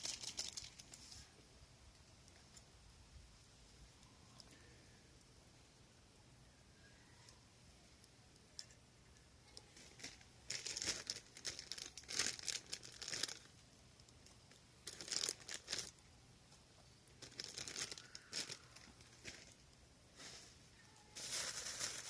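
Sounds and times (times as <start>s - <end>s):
crinkling and rustling: 0.0s - 1.4s, 8.4s - 22.0s.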